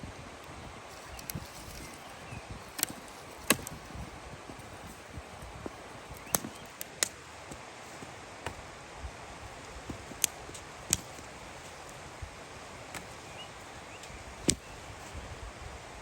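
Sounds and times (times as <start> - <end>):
low outdoor background hiss: 0.0 - 16.0
dry sticks snapping: 0.9 - 8.6, 9.6 - 12.0, 14.0 - 14.8.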